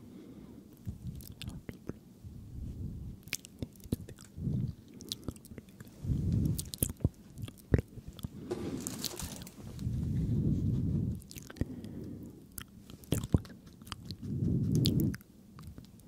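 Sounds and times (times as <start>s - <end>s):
wet mouth clicks and smacks: 0.8s - 2.0s, 3.2s - 4.3s, 5.0s - 8.3s, 12.5s - 16.0s.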